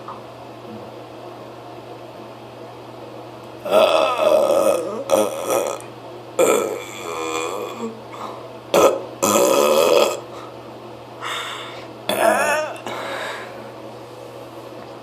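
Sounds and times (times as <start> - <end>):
person burping loudly: 3.6 - 8.0, 8.7 - 10.3, 12.1 - 12.9.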